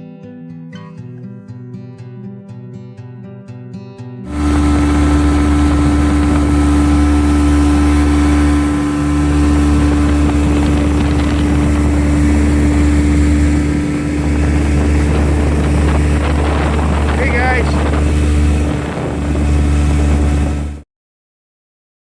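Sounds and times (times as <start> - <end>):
outboard motor droning: 4.3 - 20.8.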